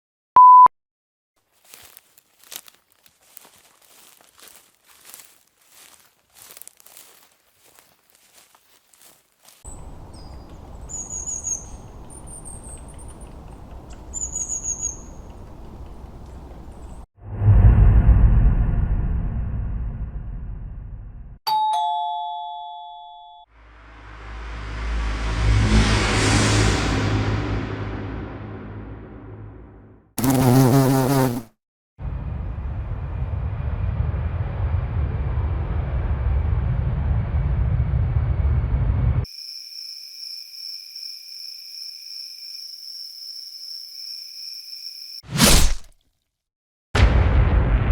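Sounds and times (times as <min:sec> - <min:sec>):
birds chirping: 0:09.7 - 0:17.0
loud high bird trills: 0:09.7 - 0:17.0
low background rumble: 0:09.7 - 0:21.4, 0:32.0 - 0:39.2.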